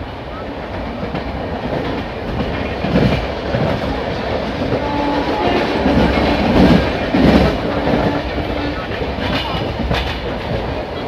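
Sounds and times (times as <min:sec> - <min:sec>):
train wheels rumbling on rails: 0:00.0 - 0:11.0
wheels clattering over rail joints: 0:01.7 - 0:11.0.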